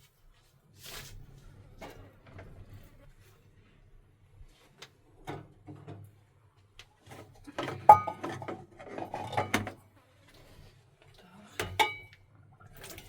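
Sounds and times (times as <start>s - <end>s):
objects knocking and rubbing: 7.6s - 9.8s.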